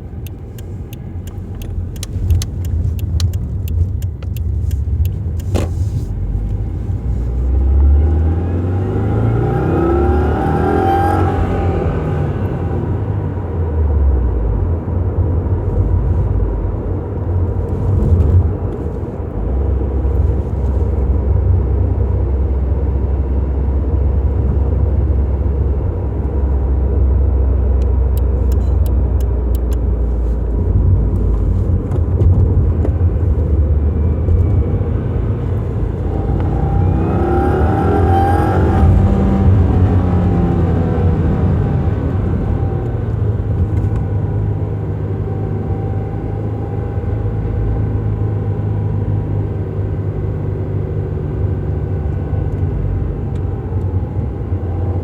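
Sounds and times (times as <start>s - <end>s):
car engine rumble: 0.0s - 55.0s
engine revving: 7.3s - 13.2s, 33.2s - 44.2s.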